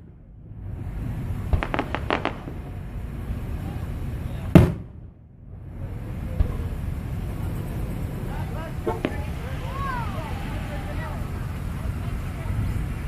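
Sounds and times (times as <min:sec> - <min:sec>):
firework boom: 0:00.0 - 0:03.0, 0:04.2 - 0:05.2, 0:08.8 - 0:10.7
fireworks crackling: 0:00.0 - 0:05.0, 0:05.6 - 0:13.0.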